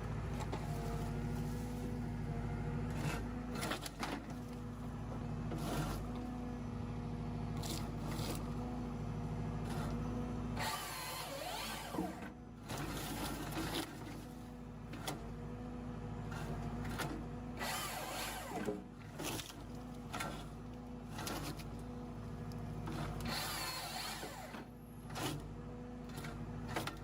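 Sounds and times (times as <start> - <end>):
tractor diesel engine running: 0.0 - 27.0.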